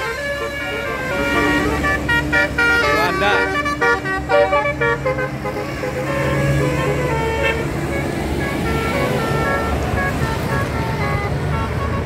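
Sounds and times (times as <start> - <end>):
bus engine rumble: 0.0 - 12.0
musical air horn melody: 0.0 - 12.0.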